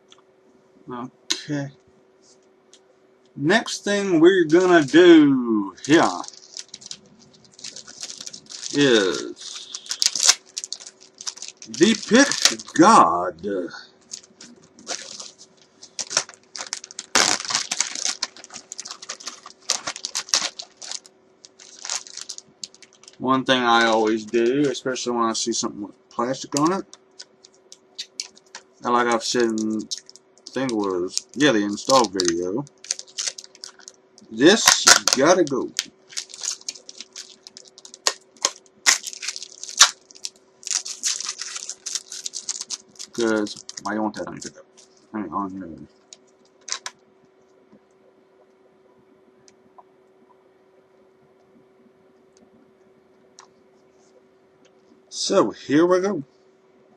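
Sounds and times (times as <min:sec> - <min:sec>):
faint steady hum: 0:00.0 - 0:56.9
plastic film peeling and crackling: 0:04.4 - 0:05.1, 0:05.8 - 0:13.1, 0:14.0 - 0:24.8, 0:26.2 - 0:45.1, 0:46.0 - 0:47.0.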